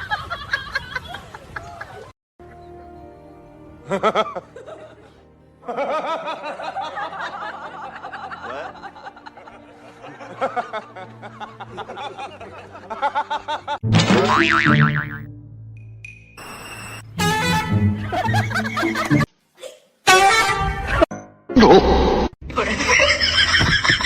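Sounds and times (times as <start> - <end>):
music: 2.4 - 19.3
people snickering and laughing: 3.8 - 13.8, 17.9 - 19.8, 22.5 - 24.0.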